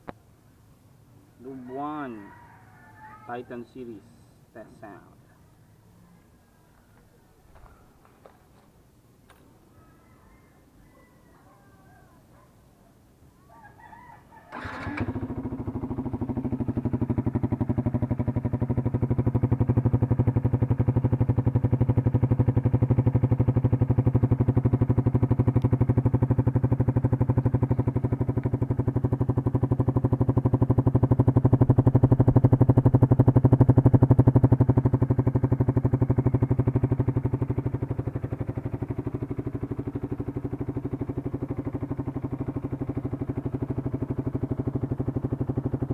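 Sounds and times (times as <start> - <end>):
motorcycle engine starting and idling: 14.0 - 45.9.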